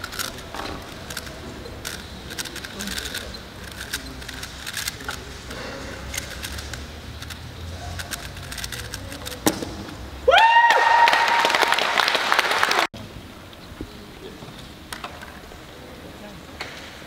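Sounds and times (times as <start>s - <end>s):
speedcube clicks: 0.0s - 5.2s, 6.2s - 9.4s
applause and cheering: 10.3s - 12.9s.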